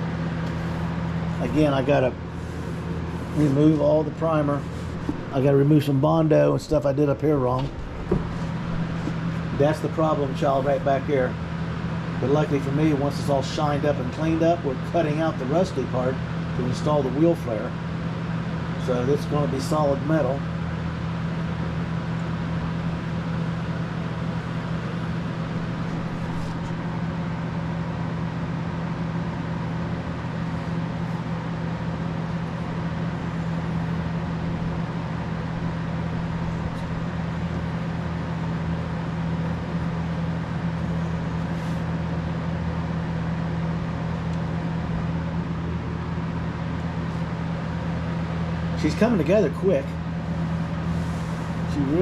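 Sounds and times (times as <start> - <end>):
mechanical drone with low hum: 0.0 - 52.0.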